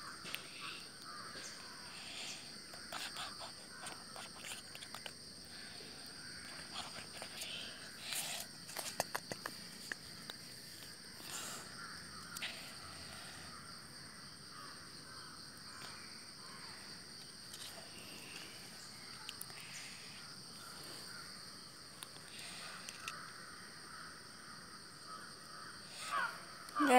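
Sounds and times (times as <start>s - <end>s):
crows cawing: 0.0s - 1.9s, 22.5s - 26.9s
cricket chorus: 0.0s - 26.9s.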